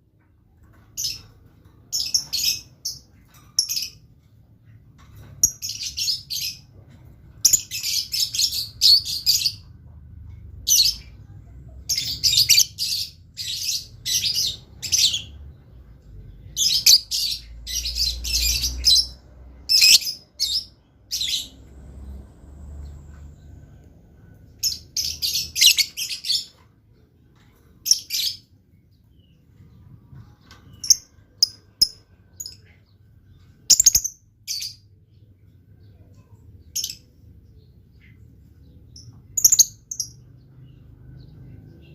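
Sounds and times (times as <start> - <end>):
lovebird chirping: 11.8 - 15.4, 16.4 - 23.5, 24.6 - 26.6, 30.6 - 32.8, 33.5 - 34.8, 38.9 - 41.9.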